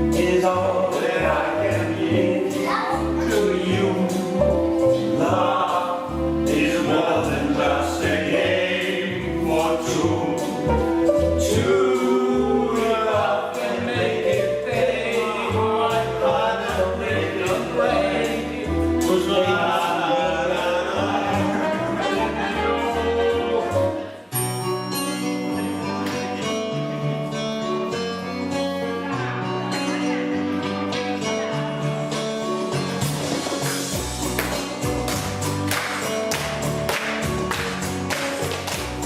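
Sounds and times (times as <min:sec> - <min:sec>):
steady bass line: 0:00.0 - 0:24.0, 0:25.6 - 0:39.0
choir singing: 0:05.1 - 0:23.9.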